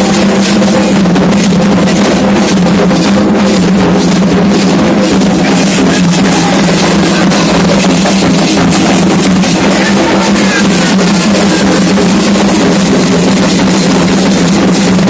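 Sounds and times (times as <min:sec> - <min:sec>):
hand drums beating: 0:00.0 - 0:15.0.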